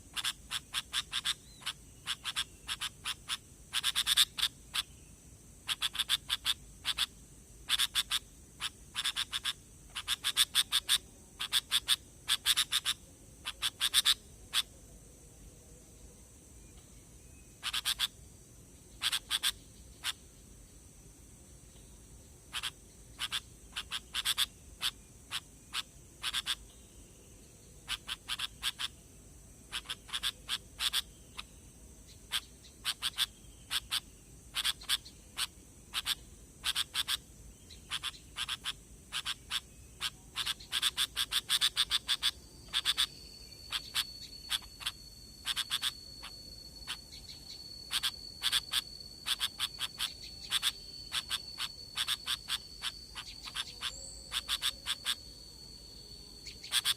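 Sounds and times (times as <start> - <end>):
high-pitched insect-like whine: 0.0 - 15.6, 16.2 - 56.9
bird call notes: 37.9 - 56.9.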